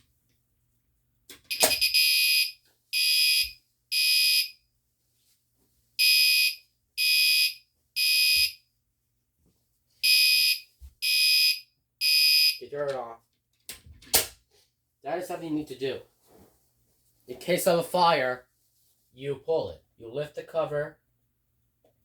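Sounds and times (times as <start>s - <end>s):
fire alarm horn blasts: 1.5s - 4.5s, 6.0s - 8.6s.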